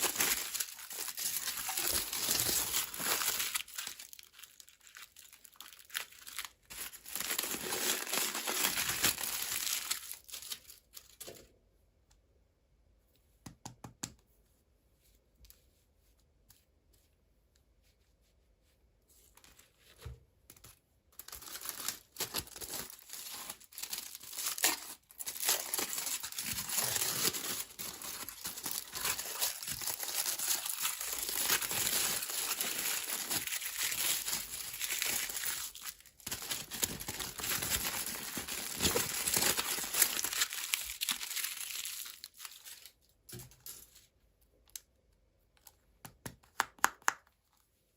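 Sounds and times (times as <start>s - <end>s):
wrapper crinkling and tearing: 0.0s - 11.4s, 21.1s - 43.1s.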